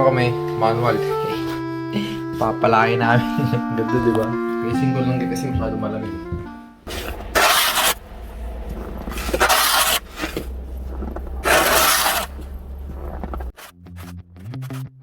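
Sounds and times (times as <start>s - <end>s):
steady low rumble: 6.9s - 13.5s
snow shovel scraping through snow: 6.9s - 13.7s.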